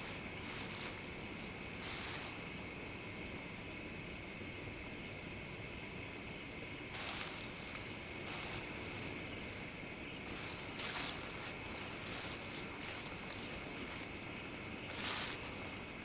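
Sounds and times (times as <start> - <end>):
footsteps in dry leaves: 0.0 - 2.5, 7.0 - 16.0.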